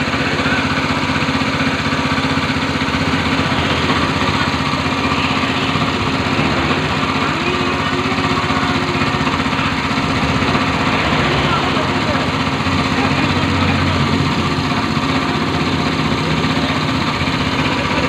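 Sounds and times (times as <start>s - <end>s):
pressure washer pump humming: 0.0s - 18.0s.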